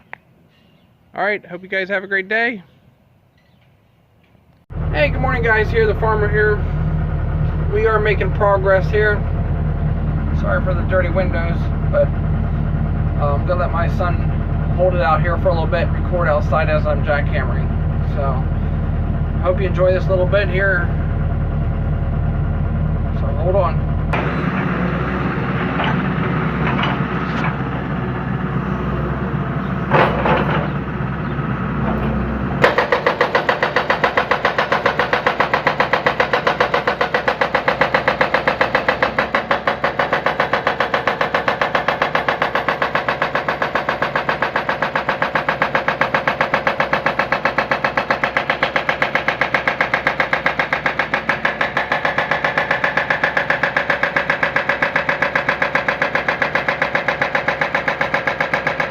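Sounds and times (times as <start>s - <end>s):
hydraulic breaker pounding concrete: 4.7s - 28.4s, 29.2s - 58.9s
diesel engine running: 4.7s - 58.9s.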